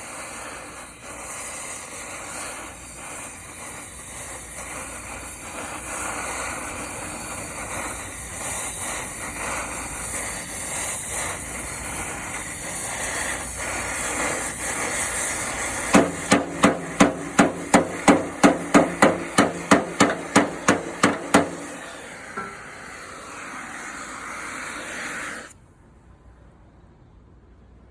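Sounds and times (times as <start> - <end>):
steady hiss: 0.0 - 25.6
hammer blows on steel plate: 15.8 - 23.2.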